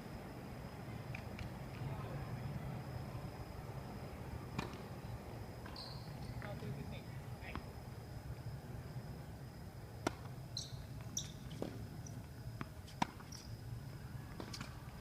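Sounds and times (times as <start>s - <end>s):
short high squeaks: 5.7s - 6.4s, 10.6s - 11.6s.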